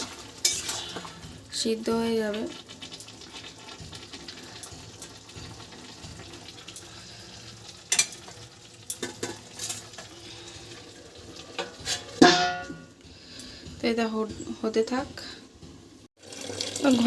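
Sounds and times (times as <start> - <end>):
utensils clinking on pan: 0.0 - 1.4, 7.9 - 10.1, 11.6 - 13.0
curry simmering with faint sizzle: 0.0 - 17.0
lid clanging on pan: 8.9 - 9.8, 11.6 - 12.9.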